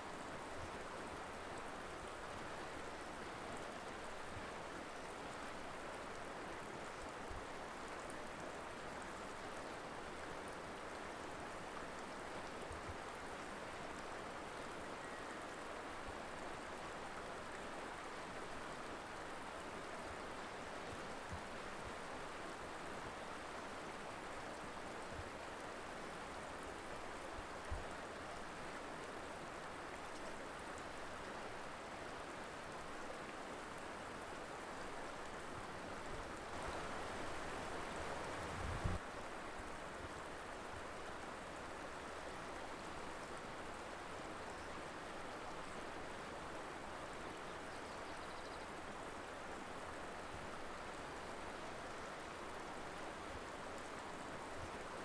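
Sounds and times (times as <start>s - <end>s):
river flowing over rocks: 28.1s - 47.4s.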